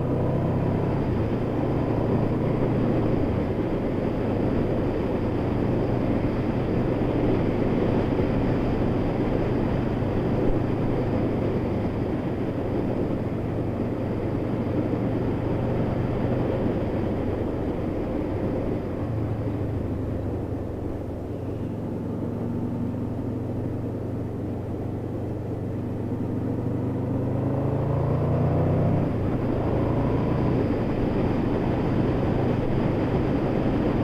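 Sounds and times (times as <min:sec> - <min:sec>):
motorcycle engine running: 0:00.0 - 0:34.0
wind and road noise: 0:00.0 - 0:34.0.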